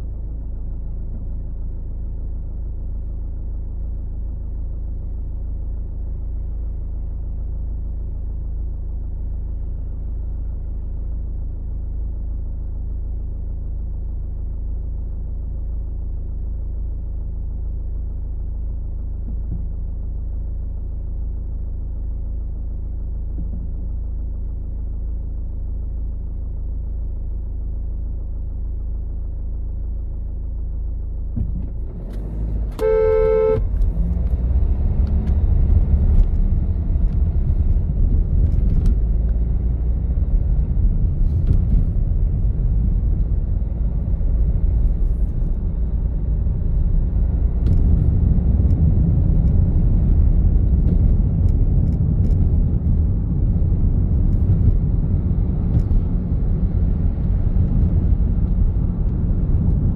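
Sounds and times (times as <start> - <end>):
traffic rumble: 16.8 - 59.9
vehicle horn: 32.6 - 34.0.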